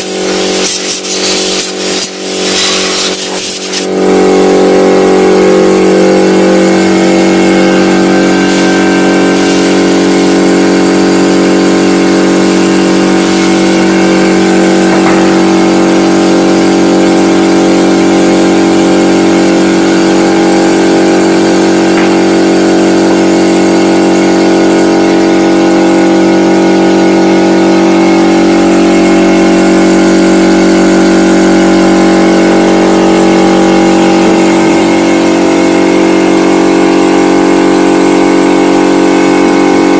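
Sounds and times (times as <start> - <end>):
air hissing bursts: 0.0 - 4.0, 8.3 - 10.4, 13.1 - 14.2
air compressor motor hum: 0.0 - 39.9.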